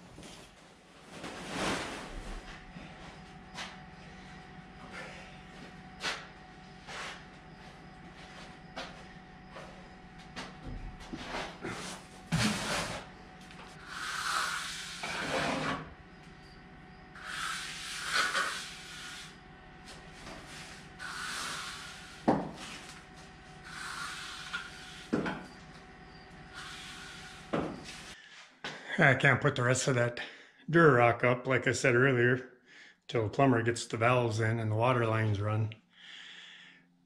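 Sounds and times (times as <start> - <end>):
trowel scraping mortar: 13.8 - 15.9, 17.2 - 19.3.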